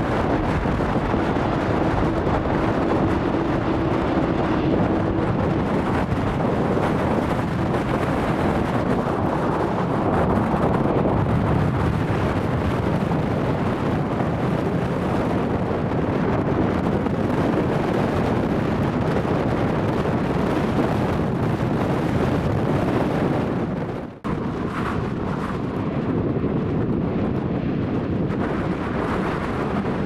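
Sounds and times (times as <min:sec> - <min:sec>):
jet engines rumbling: 0:00.0 - 0:30.0
wind buffeting microphone: 0:00.0 - 0:30.0.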